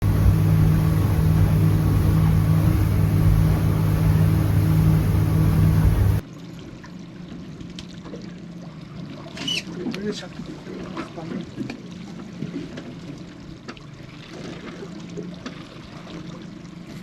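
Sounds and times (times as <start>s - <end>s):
boat motor running: 0.0s - 6.2s
rushing water: 0.0s - 6.2s.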